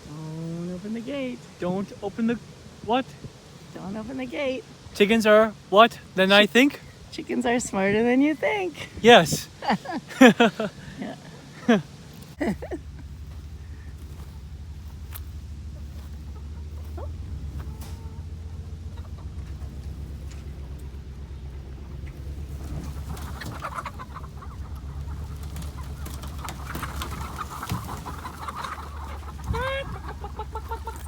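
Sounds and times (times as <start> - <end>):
chickens clucking: 1.1 - 31.0
low engine drone: 12.4 - 27.3.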